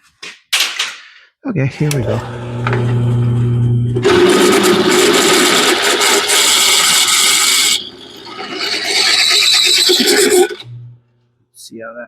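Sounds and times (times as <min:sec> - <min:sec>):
electric drill grinding metal: 0:01.8 - 0:11.0.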